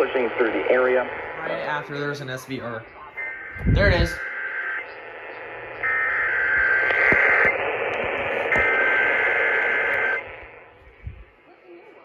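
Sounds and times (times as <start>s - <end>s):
radio static: 0.0s - 11.4s
warbling two-tone data bursts: 2.9s - 10.5s.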